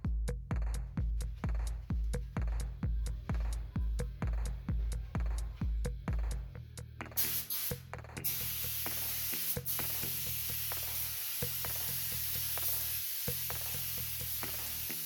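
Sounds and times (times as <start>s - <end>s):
electronic music with steady beat: 0.0s - 15.0s
paint spray gun hissing: 7.2s - 15.0s.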